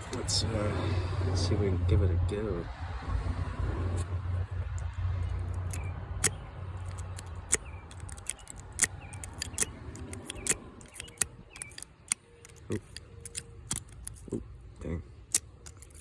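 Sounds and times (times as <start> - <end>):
lock pick metallic clicks: 4.7 - 14.4, 15.3 - 16.0.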